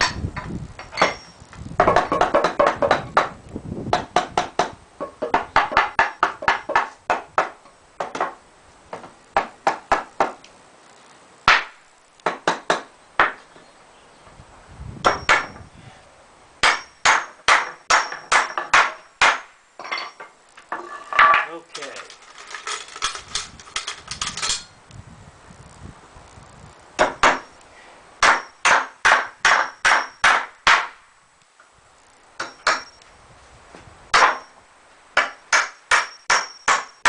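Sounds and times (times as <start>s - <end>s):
hammer striking nails into wood: 1.8s - 3.3s, 3.9s - 8.4s, 9.4s - 10.4s, 11.5s - 13.4s, 15.0s - 15.6s, 16.6s - 19.5s, 27.0s - 27.5s, 28.2s - 31.0s, 32.4s - 32.9s, 34.1s - 34.5s, 35.2s - 37.0s
clatter of handling: 19.8s - 24.7s.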